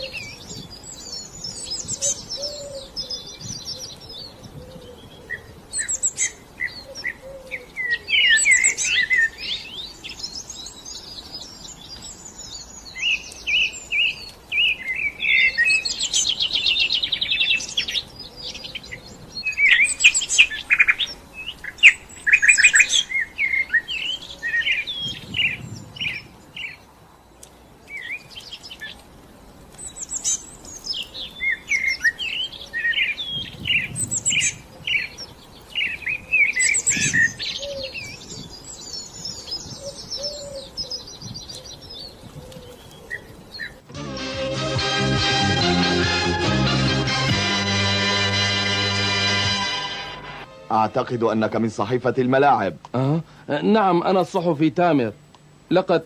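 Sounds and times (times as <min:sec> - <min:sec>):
songbirds chirping and singing: 0:00.0 - 0:56.0.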